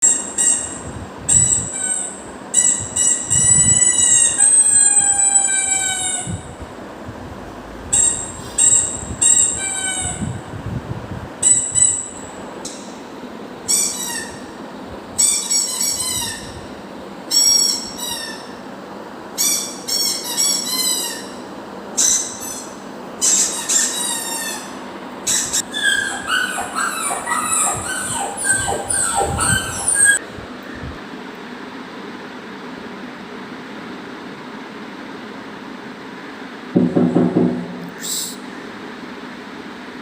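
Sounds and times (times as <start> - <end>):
high squeaky chirps: 0.0 - 6.6, 7.9 - 10.4, 13.6 - 14.5, 19.4 - 21.4, 22.0 - 30.2
low whistles: 2.6 - 6.7, 7.6 - 10.5, 25.3 - 30.2.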